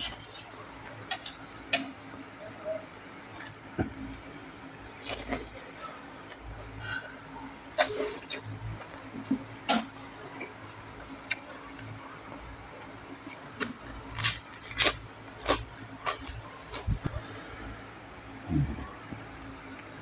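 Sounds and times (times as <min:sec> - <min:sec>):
crisp eating crunches: 0:04.9 - 0:06.6, 0:13.2 - 0:17.2.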